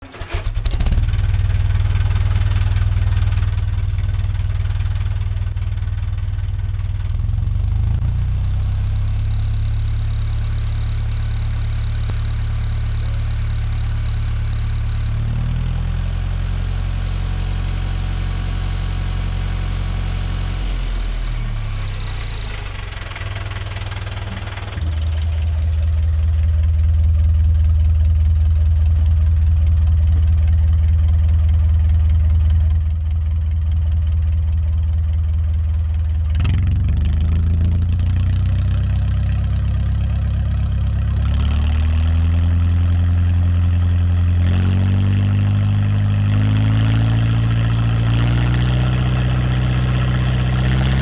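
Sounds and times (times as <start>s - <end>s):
tractor engine running: 0.0s - 51.0s
thin high whine: 7.0s - 22.7s.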